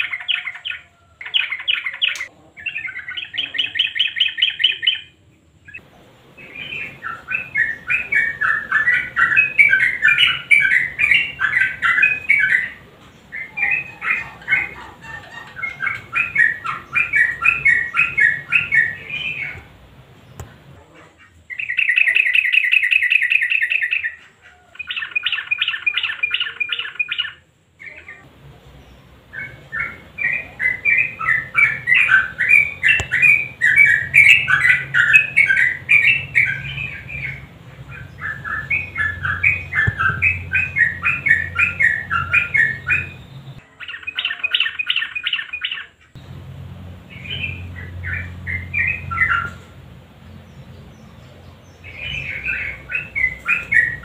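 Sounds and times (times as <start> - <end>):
bulbuls singing: 0.0 - 54.0
low hum: 46.2 - 54.0.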